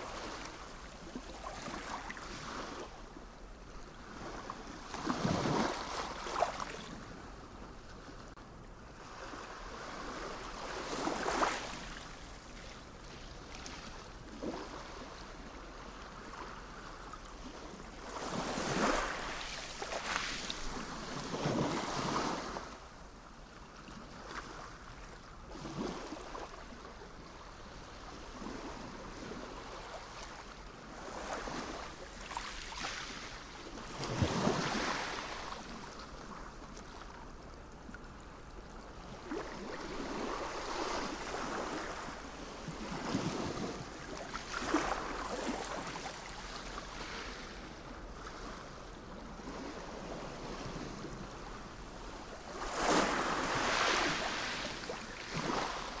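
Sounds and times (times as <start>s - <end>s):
sea waves breaking: 18.2s - 22.8s, 28.4s - 37.0s, 39.2s - 51.2s, 52.4s - 56.0s.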